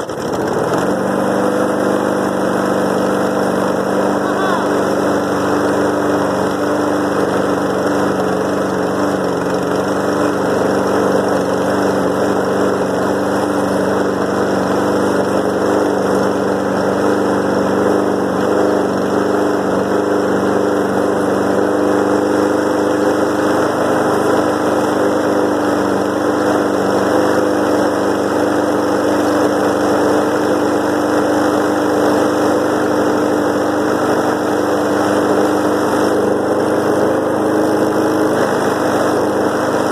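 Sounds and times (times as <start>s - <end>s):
lawn mower engine running: 0.0s - 39.9s.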